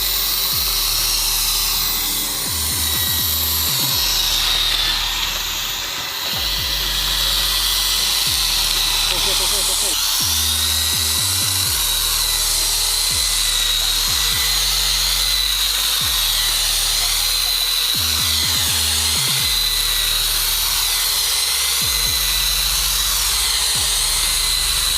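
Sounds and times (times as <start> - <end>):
electric drill motor whining: 0.0 - 24.9.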